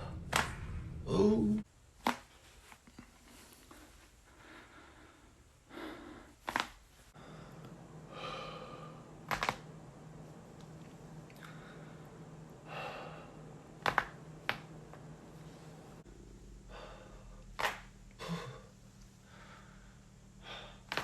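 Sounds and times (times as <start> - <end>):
soft breathing: 2.3 - 9.3, 10.2 - 17.5, 18.1 - 21.0.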